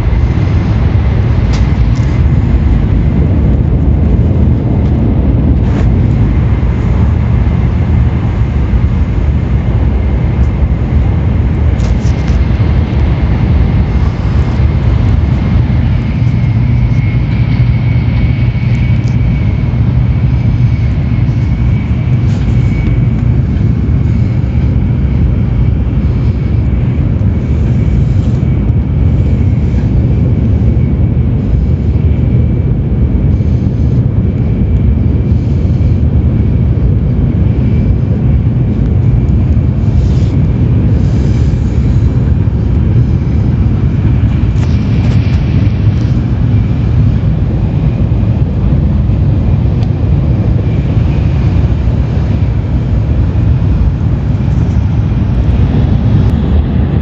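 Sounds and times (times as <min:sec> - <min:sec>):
train cabin low rumble: 0:00.0 - 0:57.0.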